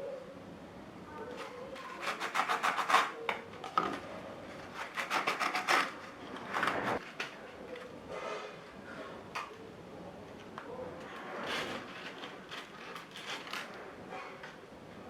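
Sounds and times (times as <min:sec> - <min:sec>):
hand file rasping on plywood: 0:01.8 - 0:03.1, 0:04.7 - 0:06.0.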